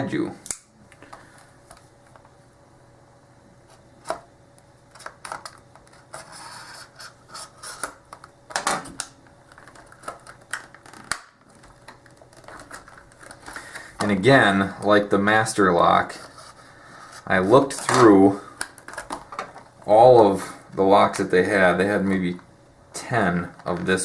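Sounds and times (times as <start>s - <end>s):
packaging rustling: 4.9s - 14.2s.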